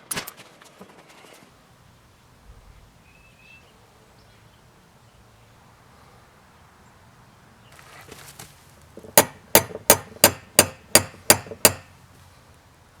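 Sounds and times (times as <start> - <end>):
hammer striking metal on anvil: 9.0 - 11.9.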